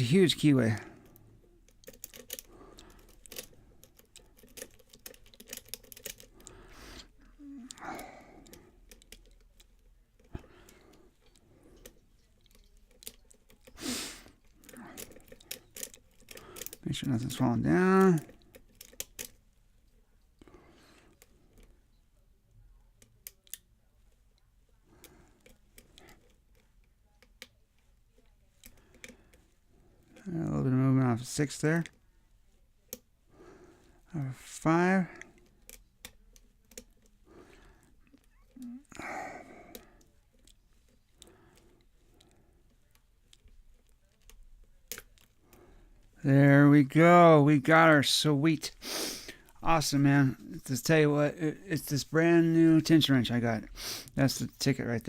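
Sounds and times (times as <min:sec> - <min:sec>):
lock pick metal clicks: 0:01.1 - 0:06.5, 0:14.6 - 0:16.8.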